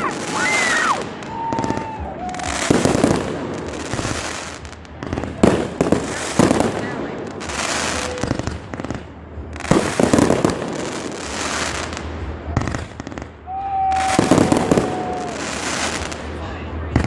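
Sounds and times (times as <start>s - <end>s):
fireworks banging and crackling: 0.0s - 17.0s.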